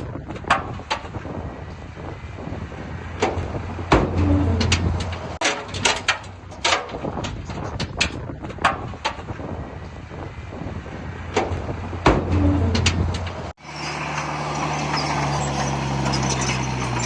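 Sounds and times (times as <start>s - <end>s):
heavy machine engine rumbling: 0.0s - 17.0s
metallic clanks and knocks: 3.2s - 9.3s, 11.3s - 17.0s.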